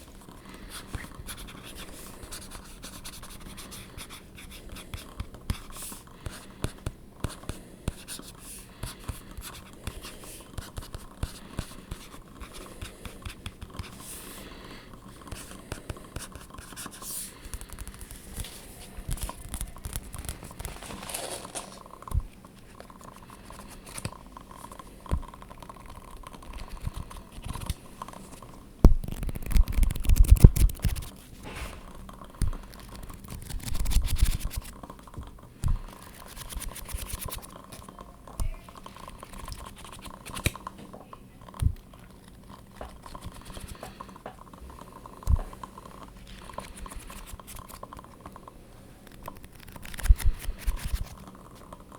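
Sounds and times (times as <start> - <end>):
scratching on objects: 15.2 - 24.8.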